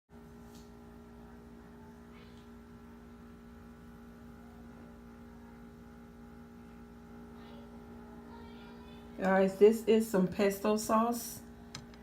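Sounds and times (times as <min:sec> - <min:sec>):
steady electrical hum: 0:00.1 - 0:12.0.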